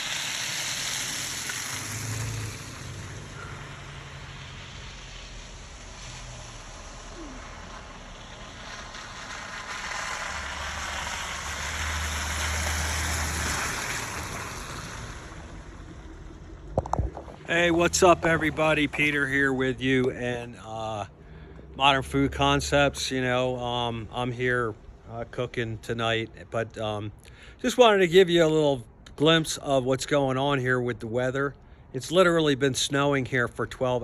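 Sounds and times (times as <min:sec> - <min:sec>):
tyres hissing on wet road: 0:00.0 - 0:25.5
vehicle engines humming: 0:00.0 - 0:26.4.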